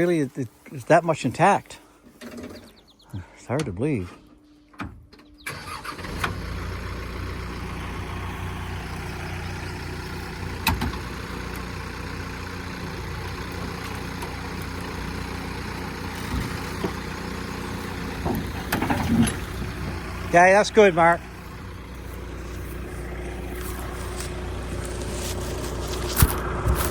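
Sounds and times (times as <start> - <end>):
diesel engine running: 5.5 - 26.9.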